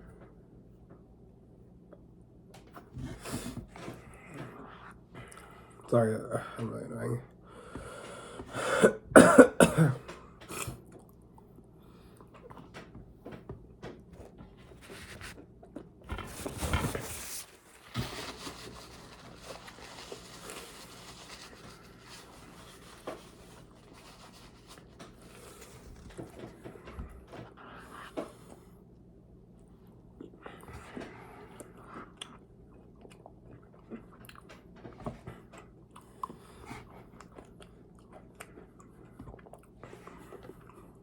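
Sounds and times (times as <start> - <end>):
rustling: 16.1 - 26.4.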